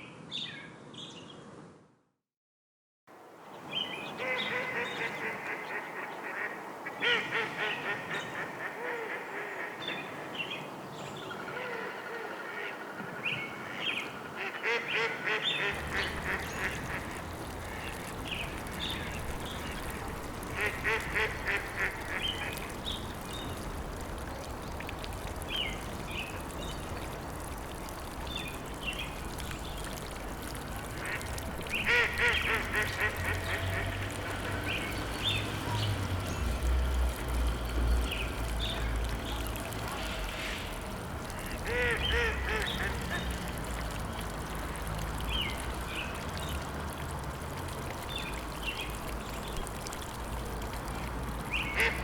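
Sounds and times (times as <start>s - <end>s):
steady natural background hiss: 3.1s - 52.0s
waterfowl honking and quacking: 14.4s - 18.7s, 19.4s - 22.8s, 30.9s - 34.7s, 41.3s - 43.4s.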